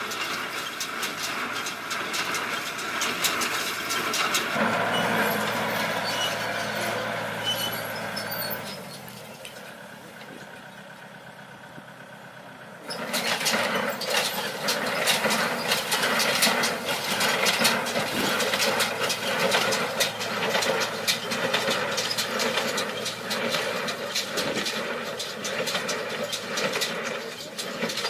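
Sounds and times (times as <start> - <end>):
tractor engine clattering: 0.0 - 28.0.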